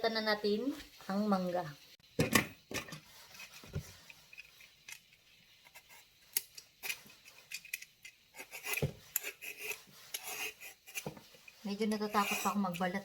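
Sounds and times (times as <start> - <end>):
blade scraping mango skin: 8.3 - 11.1.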